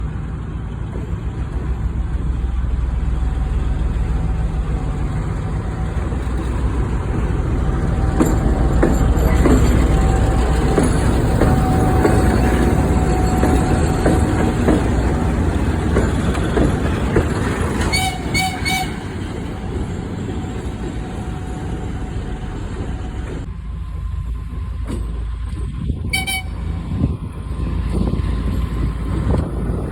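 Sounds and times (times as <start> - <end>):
diesel locomotive engine running: 0.0 - 29.9
short horn toots: 26.1 - 26.6.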